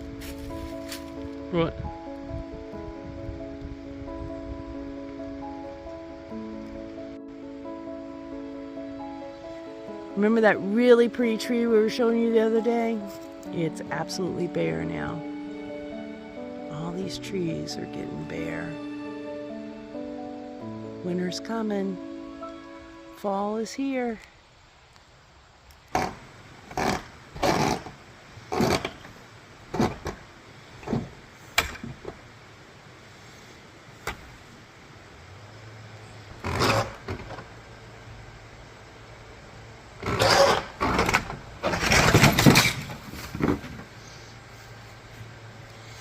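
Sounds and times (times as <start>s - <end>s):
footsteps: 0.0s - 1.3s
rustling and scuffing: 0.0s - 1.3s, 42.7s - 46.0s
low engine hum: 26.1s - 46.0s.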